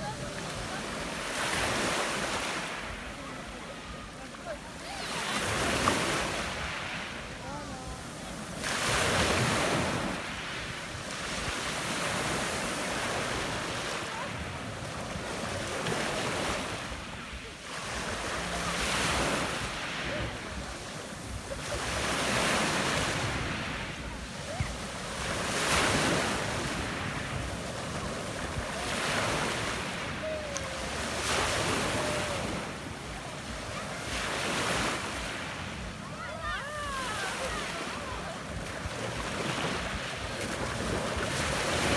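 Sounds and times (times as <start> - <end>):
waves breaking on pebble beach: 0.0 - 41.9.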